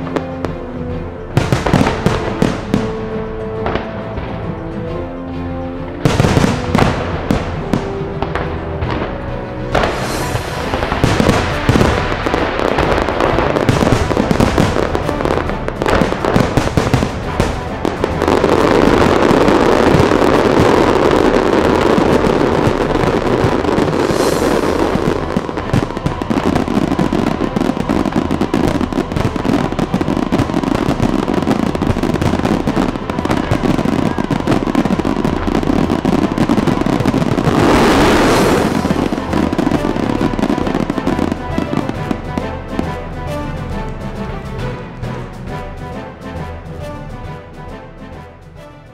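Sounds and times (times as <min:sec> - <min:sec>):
fireworks bangs and crackling: 0:00.0 - 0:04.7, 0:06.0 - 0:45.5
music: 0:00.0 - 0:48.9.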